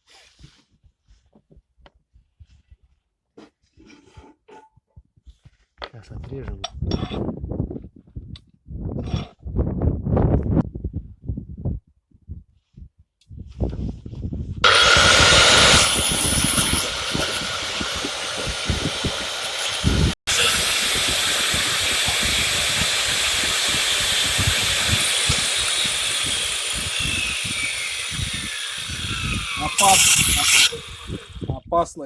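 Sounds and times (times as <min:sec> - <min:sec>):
angle grinder cutting steel: 0:14.6 - 0:31.5.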